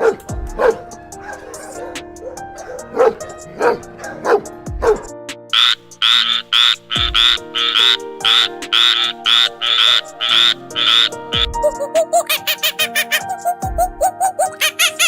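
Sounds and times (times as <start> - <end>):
background music with held notes: 0.0 - 15.0
animal croaking calls: 5.6 - 15.0.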